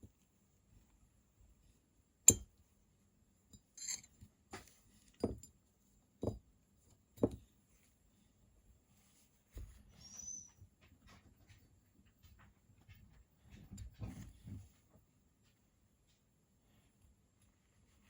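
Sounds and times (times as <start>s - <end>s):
tools clinking on hard surface: 3.6s - 5.5s.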